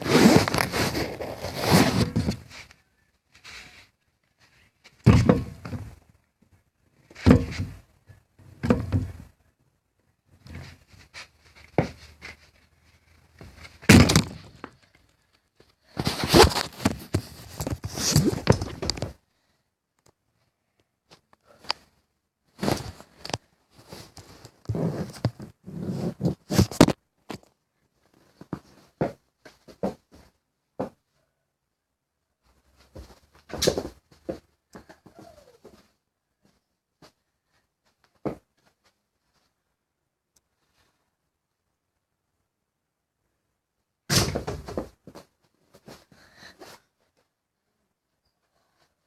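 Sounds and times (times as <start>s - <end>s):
irregular thuds and knocks: 5.0s - 6.0s, 7.2s - 7.8s, 13.4s - 14.7s.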